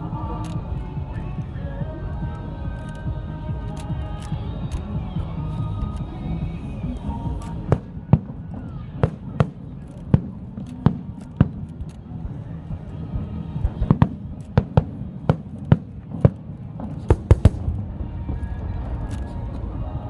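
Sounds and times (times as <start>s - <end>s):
fireworks banging: 13.6s - 19.8s
fireworks crackling: 13.6s - 20.0s.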